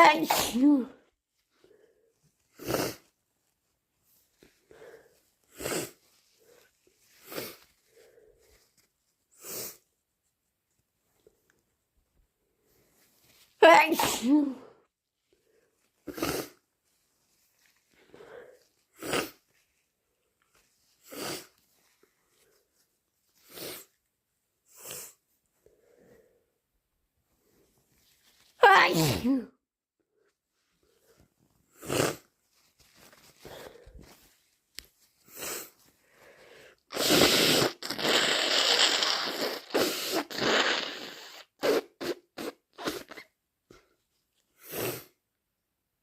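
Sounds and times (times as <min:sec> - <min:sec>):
nose blowing: 0:02.6 - 0:03.1, 0:04.8 - 0:06.0, 0:07.2 - 0:07.7, 0:16.0 - 0:16.6, 0:18.9 - 0:19.4, 0:21.0 - 0:21.5, 0:31.7 - 0:32.3, 0:35.3 - 0:35.7, 0:36.9 - 0:43.3, 0:44.6 - 0:45.2.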